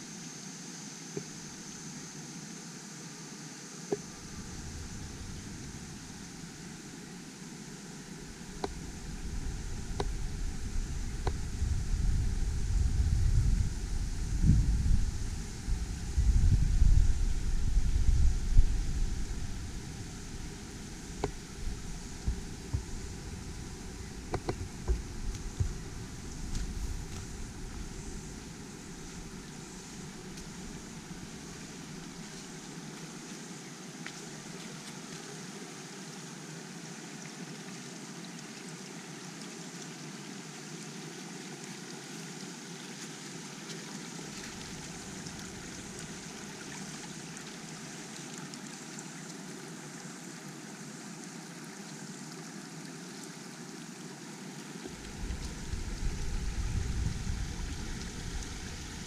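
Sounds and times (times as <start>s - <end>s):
creek water running: 0.0s - 59.0s
wind on microphone: 4.1s - 6.2s, 8.5s - 31.6s, 54.9s - 59.0s.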